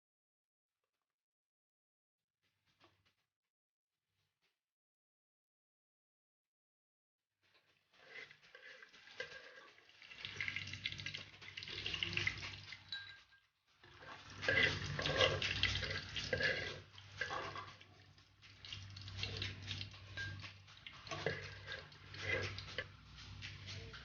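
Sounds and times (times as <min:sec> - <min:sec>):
water running from tap into sink: 0:08.0 - 0:13.1, 0:13.9 - 0:22.9.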